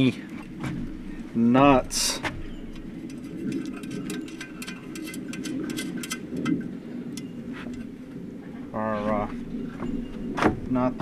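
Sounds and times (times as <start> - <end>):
steady low hum: 0.0 - 11.0
small metal parts clicking: 2.4 - 7.3.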